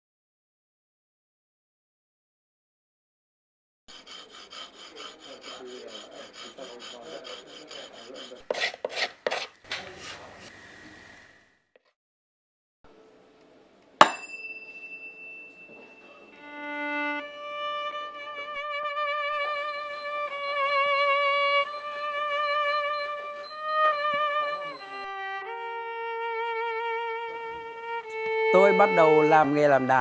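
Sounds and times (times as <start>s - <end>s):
sharp knock with ringing tone: 14.0s - 16.2s
violin playing slow notes: 16.1s - 30.0s.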